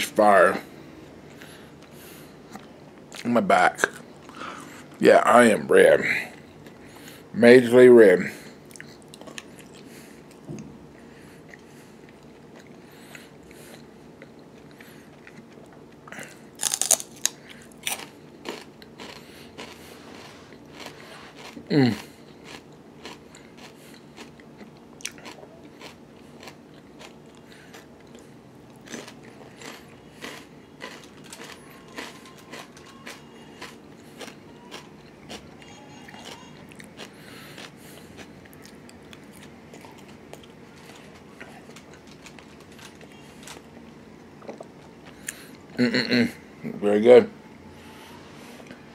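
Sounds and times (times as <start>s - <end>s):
man chewing chicken wings: 8.5s - 46.1s.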